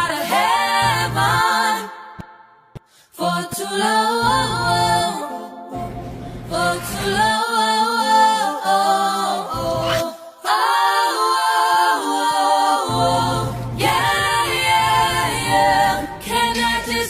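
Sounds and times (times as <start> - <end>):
voices singing wordless harmonies: 0.0 - 17.0
low bass part: 5.8 - 7.2.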